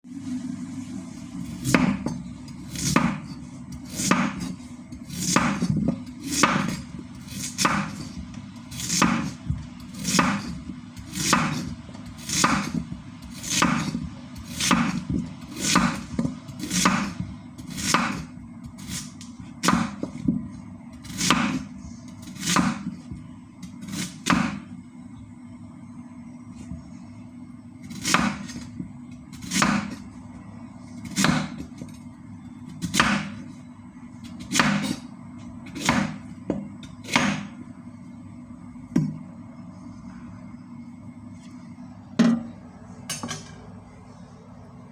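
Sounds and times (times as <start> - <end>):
steady low hum: 0.0 - 44.9
knife chopping radish: 1.4 - 24.7, 27.8 - 30.1, 31.0 - 32.0, 32.7 - 33.4, 34.2 - 35.0, 35.7 - 37.6.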